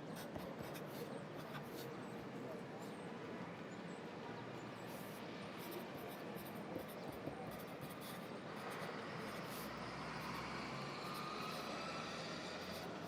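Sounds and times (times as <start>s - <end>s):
city ambience: 0.0s - 13.0s
pencil scratching on paper: 0.2s - 1.9s, 5.0s - 11.8s, 12.4s - 13.0s.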